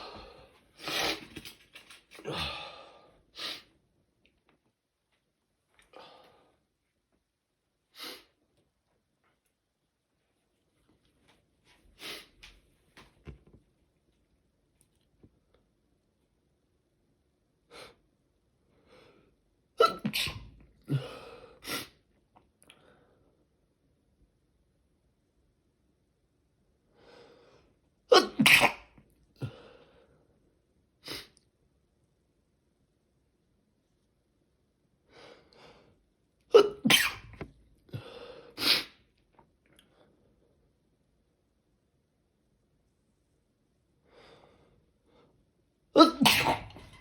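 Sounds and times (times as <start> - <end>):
person sneezing: 19.8 - 22.0, 28.1 - 29.6, 36.5 - 38.0, 38.6 - 39.0, 46.0 - 47.0.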